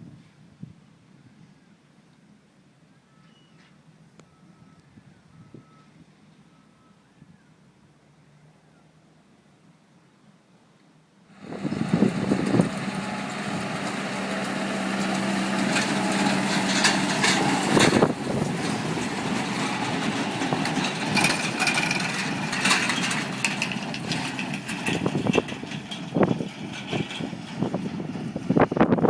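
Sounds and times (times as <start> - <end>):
tractor engine running: 11.3 - 29.0
machinery knocks and clatter: 11.6 - 28.6.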